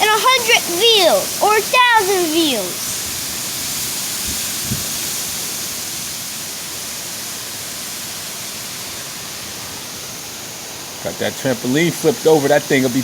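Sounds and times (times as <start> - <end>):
hurricane wind: 0.0 - 6.9
rain: 0.0 - 13.0.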